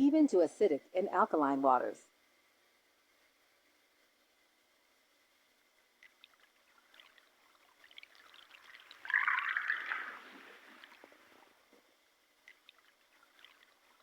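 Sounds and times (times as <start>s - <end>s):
water trickling and splashing: 6.0s - 11.7s, 12.4s - 14.0s
gush of water: 8.0s - 11.5s.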